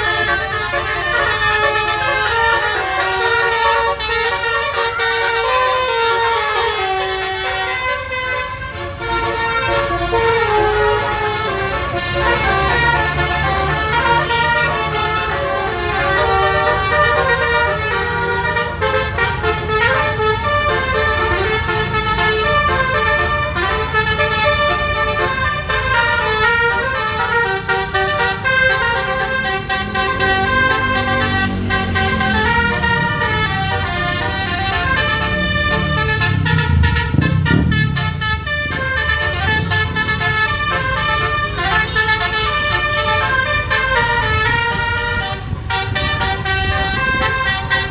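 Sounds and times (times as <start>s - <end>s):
bus horn playing a melody: 0.0s - 47.9s
low engine hum: 29.3s - 42.0s.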